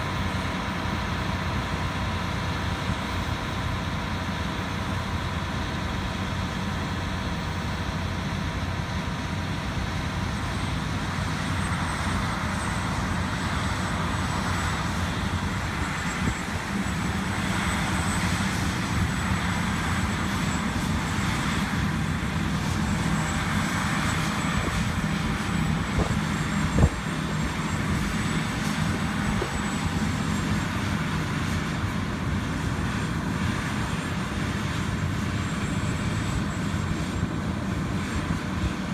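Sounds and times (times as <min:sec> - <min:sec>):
combine harvester engine drone: 0:00.0 - 0:38.9
high whine: 0:09.6 - 0:32.8.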